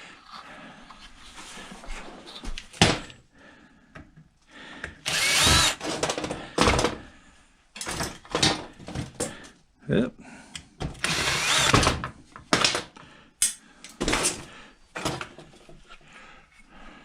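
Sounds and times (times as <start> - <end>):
power drill running: 5.0 - 6.0, 11.0 - 12.0
metal parts knocking and clattering: 7.8 - 9.3.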